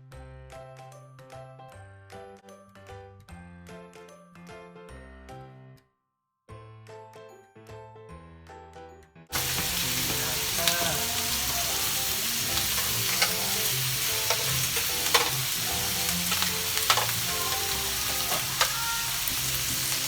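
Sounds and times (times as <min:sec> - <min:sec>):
meat sizzling on a grill: 0:09.4 - 0:20.0.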